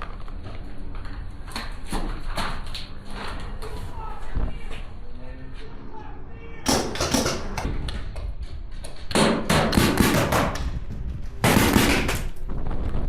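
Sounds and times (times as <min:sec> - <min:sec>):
wind rumble on microphone: 0:07.6 - 0:09.0, 0:10.1 - 0:13.0
paintball markers firing: 0:11.4 - 0:12.5.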